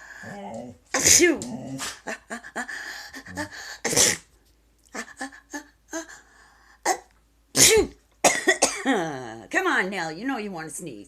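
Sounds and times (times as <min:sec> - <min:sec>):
person sneezing: 0:03.3 - 0:04.3, 0:07.6 - 0:08.8.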